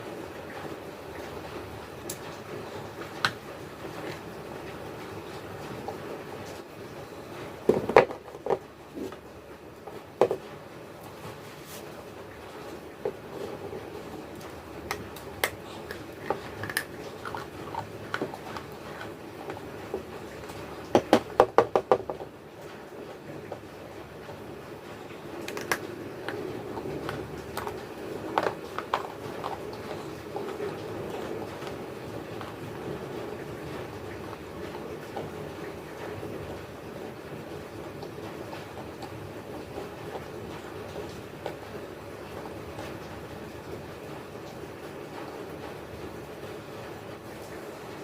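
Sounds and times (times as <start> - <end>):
crunchy clay being chewed: 14.2 - 20.4, 25.5 - 31.8.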